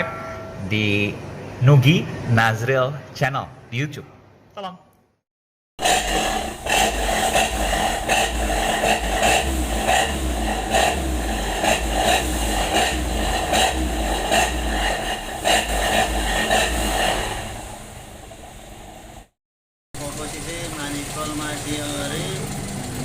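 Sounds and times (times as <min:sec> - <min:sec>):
car engine rumbling through exhaust: 0:05.8 - 0:19.3, 0:20.0 - 0:23.0.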